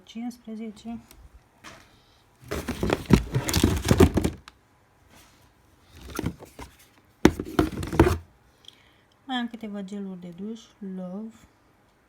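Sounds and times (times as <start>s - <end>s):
packaging rustling and crackling: 2.4s - 4.5s, 6.0s - 8.2s.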